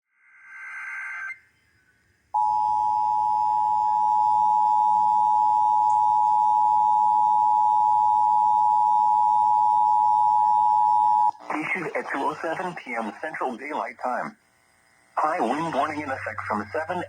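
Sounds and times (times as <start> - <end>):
two-tone alarm: 2.4 - 11.3.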